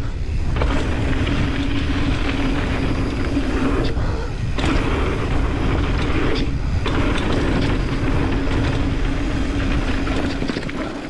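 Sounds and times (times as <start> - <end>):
bike tyres rumbling on dirt: 0.0 - 11.0
constant hum: 0.0 - 11.0
wind on microphone: 0.0 - 11.0
short rattles: 0.5 - 11.0.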